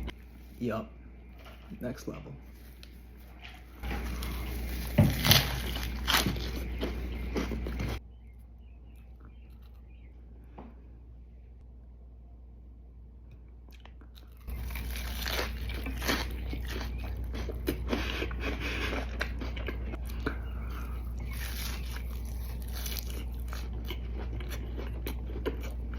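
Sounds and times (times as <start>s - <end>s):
crunchy chewing: 2.5s - 10.3s, 13.7s - 25.9s.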